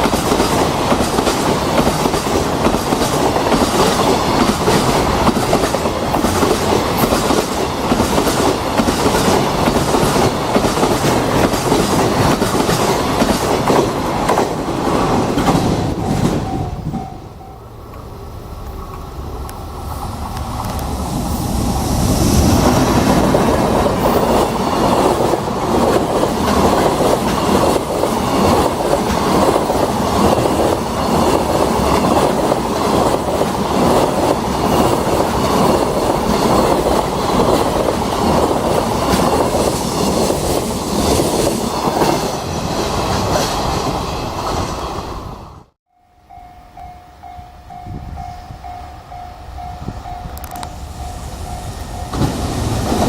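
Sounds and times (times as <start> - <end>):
train wheels clattering over rail joints: 0.0 - 18.0, 51.5 - 53.0.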